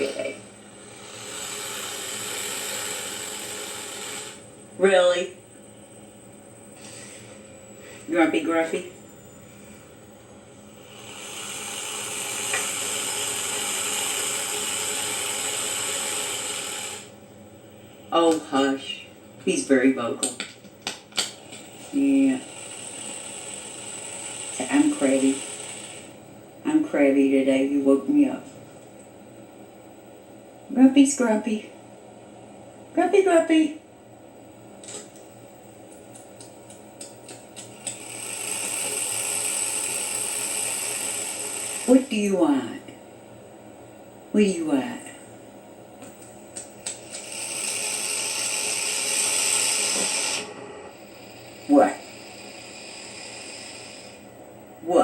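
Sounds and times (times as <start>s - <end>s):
snake hissing: 0.0s - 4.5s, 10.7s - 17.1s, 22.0s - 26.2s, 38.0s - 42.2s, 47.2s - 54.4s.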